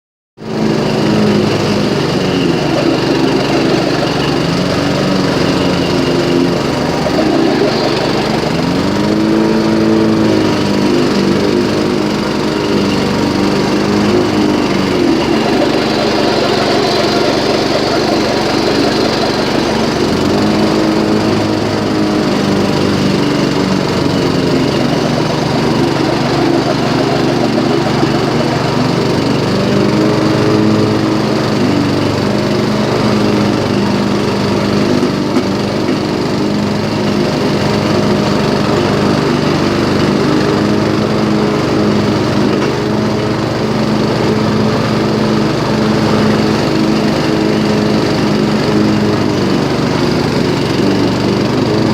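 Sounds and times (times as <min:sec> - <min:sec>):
small engine running: 0:00.4 - 0:51.9
drive belt squealing: 0:00.6 - 0:36.4.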